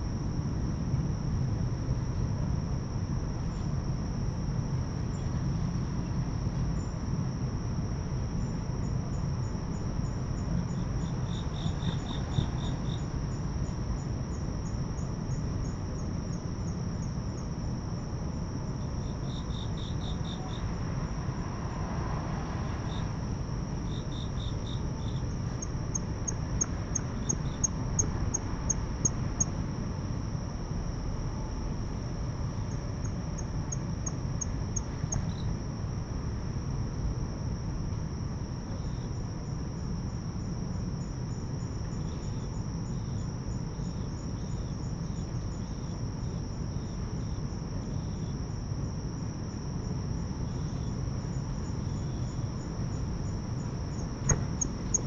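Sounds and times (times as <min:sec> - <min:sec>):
low steady rumble: 0:00.0 - 0:55.0
pulsed cricket chirps: 0:00.0 - 0:55.0
high-pitched insect trill: 0:07.7 - 0:22.0, 0:22.6 - 0:35.9, 0:38.6 - 0:55.0.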